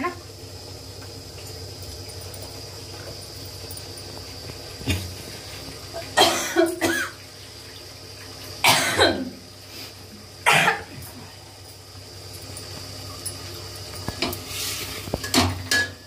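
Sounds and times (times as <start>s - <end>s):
woman coughing: 6.2s - 7.2s, 8.6s - 9.4s, 10.4s - 11.0s.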